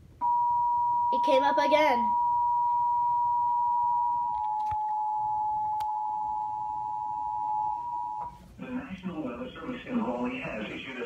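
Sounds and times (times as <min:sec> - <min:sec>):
two-tone alarm from a tv: 0:00.2 - 0:08.3.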